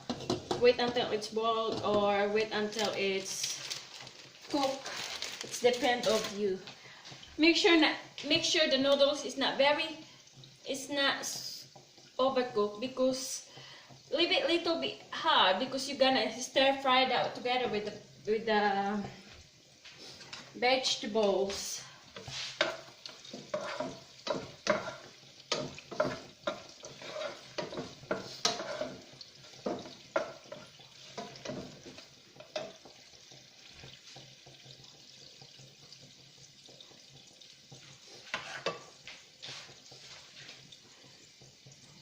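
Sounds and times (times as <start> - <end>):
utensil scraping in a pot: 0.0 - 7.2, 19.0 - 34.8, 37.6 - 41.9.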